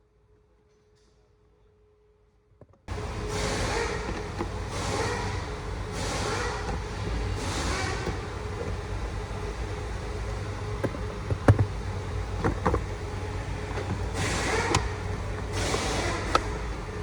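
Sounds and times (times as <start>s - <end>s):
steady low hum: 2.9s - 17.0s
sharp clicks and knocks: 6.0s - 17.0s.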